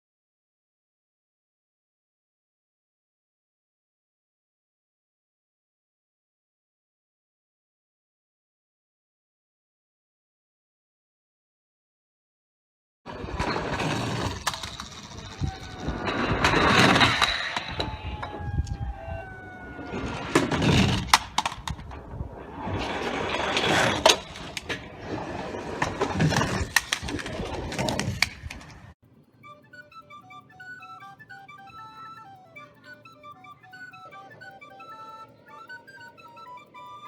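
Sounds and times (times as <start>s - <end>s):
plastic toy vehicles rattling: 13.1s - 18.0s, 22.6s - 37.0s
sharp clicks: 13.3s - 22.1s, 23.0s - 37.0s.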